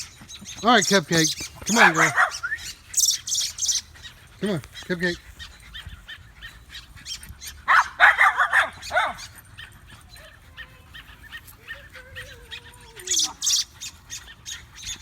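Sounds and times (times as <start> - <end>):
birds chirping faintly: 0.0 - 15.0
dog barking: 1.7 - 2.7, 7.6 - 13.6.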